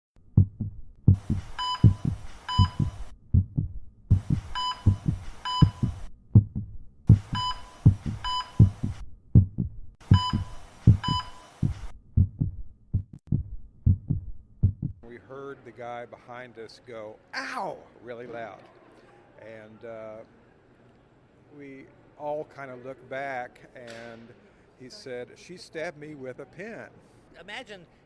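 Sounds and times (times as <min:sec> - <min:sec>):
heavy low bass pulse: 0:00.4 - 0:15.0
short beeps: 0:01.5 - 0:03.1, 0:04.5 - 0:06.0, 0:07.3 - 0:08.8, 0:10.1 - 0:11.8.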